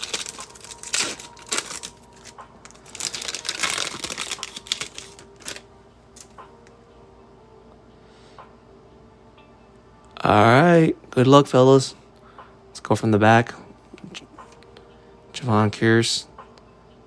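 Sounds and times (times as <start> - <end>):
cards clicking and wrappers crinkling: 0.0 - 6.4.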